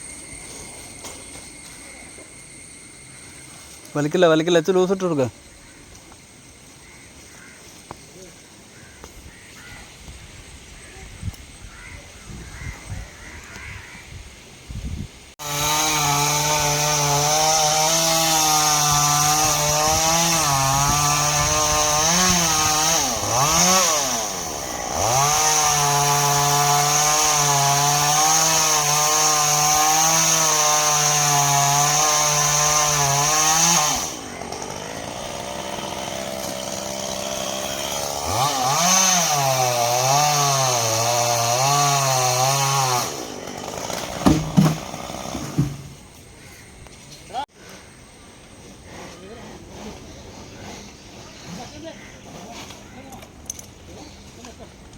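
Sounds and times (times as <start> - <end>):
chainsaw cutting wood: 15.4 - 46.1.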